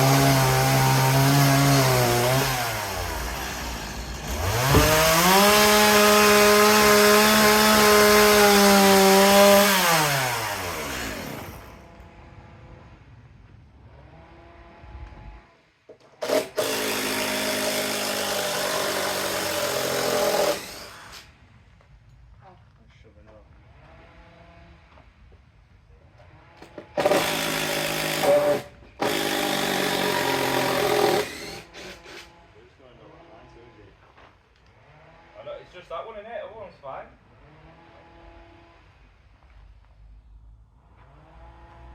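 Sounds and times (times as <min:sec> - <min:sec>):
power tool running: 0:00.0 - 0:11.7, 0:16.2 - 0:21.3, 0:26.7 - 0:32.4
chainsaw revving: 0:00.0 - 0:11.8, 0:16.2 - 0:21.1, 0:26.7 - 0:32.4, 0:37.3 - 0:38.8.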